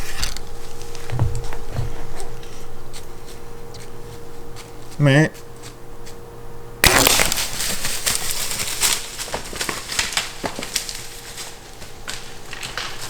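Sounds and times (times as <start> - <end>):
crunching leaves: 0.0 - 6.2, 6.8 - 13.0
deer crashing through brush: 6.8 - 13.0
twigs snapping: 6.8 - 13.0.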